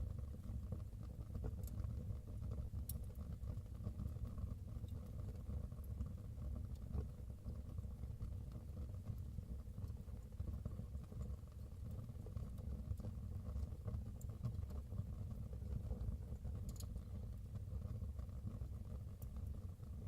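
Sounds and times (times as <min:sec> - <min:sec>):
fire crackling and popping: 0:00.1 - 0:15.8.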